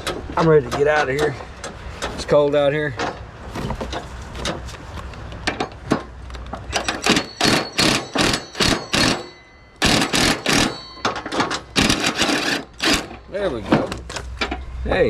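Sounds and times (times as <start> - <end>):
wrench clanking on metal: 5.4 - 14.7.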